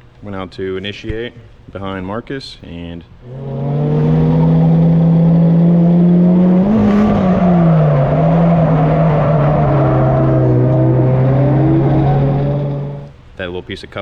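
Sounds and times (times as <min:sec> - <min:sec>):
car engine revving hard: 0:03.2 - 0:13.1.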